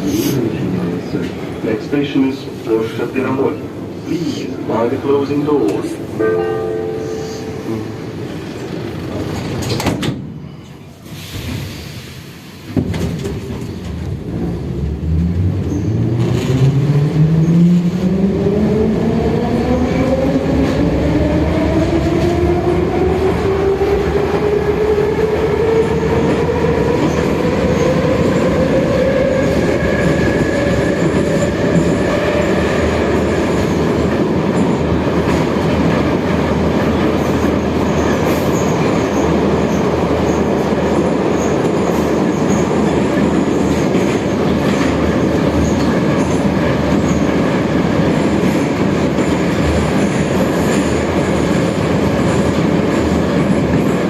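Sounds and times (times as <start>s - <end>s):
train doors shutting thud: 9.1s - 12.0s, 12.6s - 14.0s.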